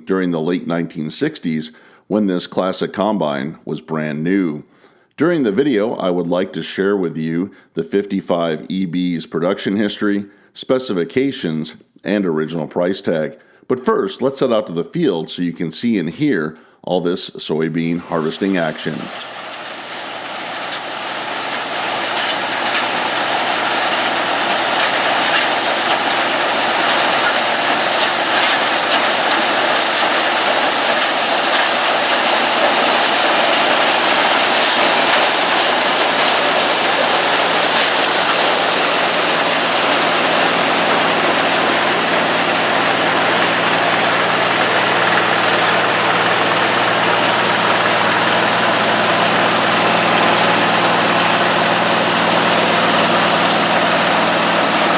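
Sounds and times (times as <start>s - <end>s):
combine harvester engine and threshing: 18.0s - 54.9s.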